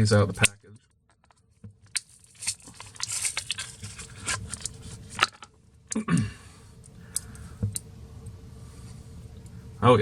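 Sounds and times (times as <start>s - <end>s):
plastic packaging crinkling: 1.1s - 5.5s.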